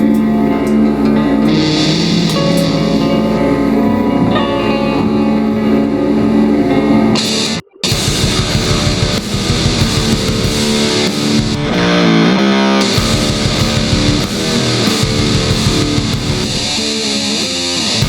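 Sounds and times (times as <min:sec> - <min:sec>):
distorted electric guitar riff: 0:00.0 - 0:18.0
bass and drums: 0:07.2 - 0:18.0.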